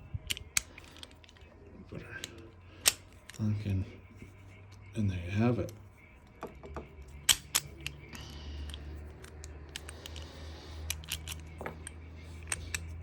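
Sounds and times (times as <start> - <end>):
low steady hum: 0.0 - 13.0
padlock metal clicks and taps: 2.2 - 3.4, 5.6 - 13.0.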